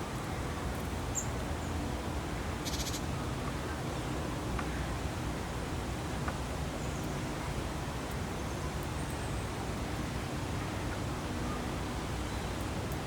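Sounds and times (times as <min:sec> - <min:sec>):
steady outdoor rushing noise: 0:00.0 - 0:13.0
faint high bird chirps: 0:02.6 - 0:03.0.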